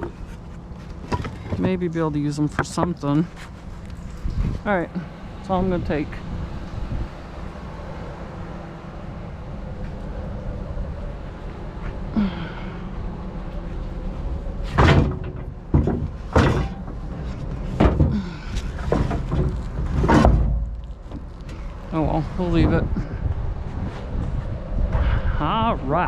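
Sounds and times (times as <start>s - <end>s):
steady low rumble: 0.0s - 26.0s
wood boards knocking and banging: 1.0s - 1.8s, 14.7s - 21.6s.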